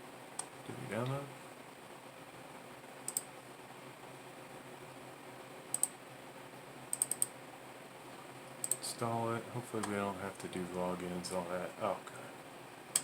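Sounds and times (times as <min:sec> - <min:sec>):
faint steady hiss: 0:00.0 - 0:13.0
computer mouse clicks: 0:03.0 - 0:03.3, 0:05.7 - 0:06.0, 0:06.9 - 0:07.4, 0:08.6 - 0:08.8.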